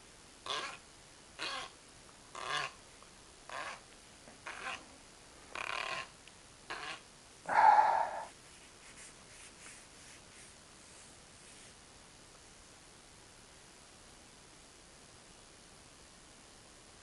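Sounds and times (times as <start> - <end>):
harsh animal calls: 0.4 - 0.8, 1.4 - 2.8, 5.5 - 6.1, 6.7 - 8.3.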